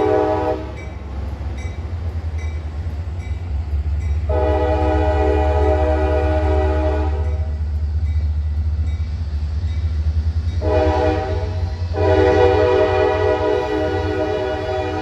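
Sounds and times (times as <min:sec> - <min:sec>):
train air horn blasts: 0:00.0 - 0:00.8, 0:04.3 - 0:07.6, 0:10.6 - 0:15.0
train low rumble: 0:00.0 - 0:15.0.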